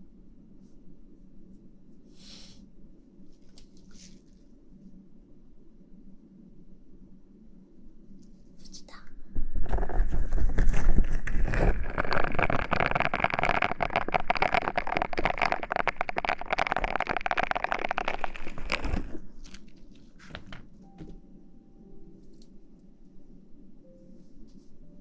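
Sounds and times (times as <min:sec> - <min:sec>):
fingers scrubbing hair: 0:10.7 - 0:19.8.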